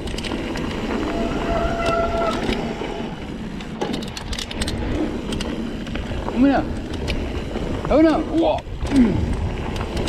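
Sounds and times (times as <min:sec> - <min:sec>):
bike clicks and rattles: 0:00.0 - 0:10.0
bike tyre and wind rumble: 0:00.0 - 0:10.0
short steady squeal: 0:01.1 - 0:02.6.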